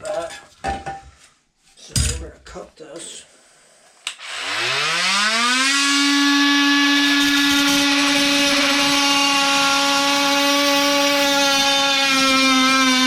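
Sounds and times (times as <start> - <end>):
power tool motor whining: 4.2 - 13.0.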